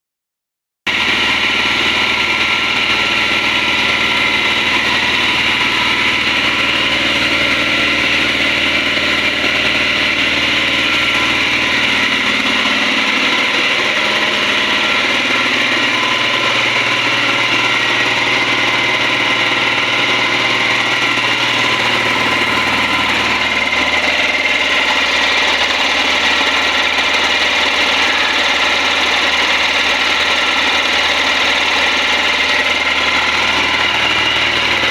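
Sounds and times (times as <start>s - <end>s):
air compressor running: 0.9s - 34.9s.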